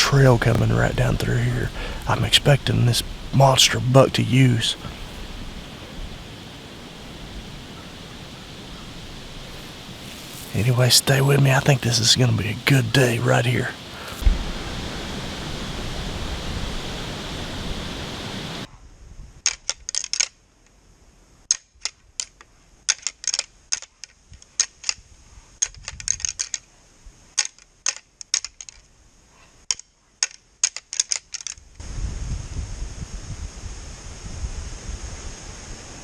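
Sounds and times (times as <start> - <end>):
wind noise on microphone: 0.0 - 11.6, 13.8 - 19.4, 25.0 - 26.4, 31.6 - 36.0.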